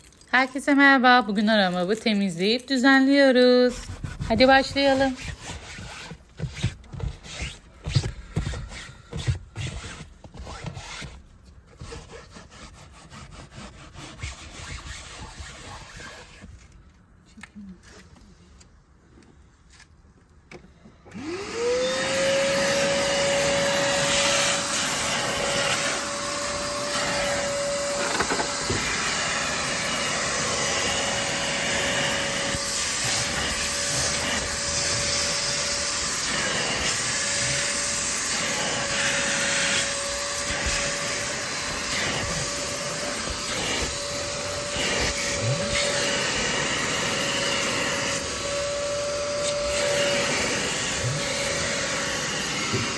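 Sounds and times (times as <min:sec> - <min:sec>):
suction motor high whine: 0:21.1 - 0:52.9.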